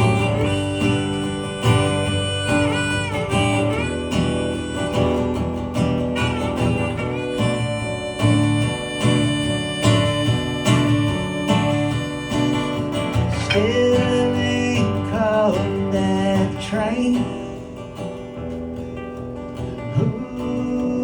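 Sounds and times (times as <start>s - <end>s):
lead melody with bending notes: 0.0s - 16.5s
guitar strumming: 0.0s - 21.0s.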